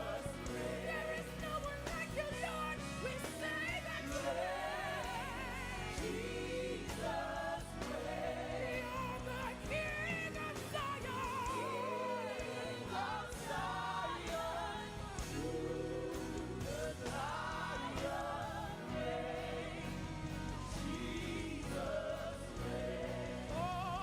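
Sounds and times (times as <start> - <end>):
voices singing gospel music: 0.0 - 24.0.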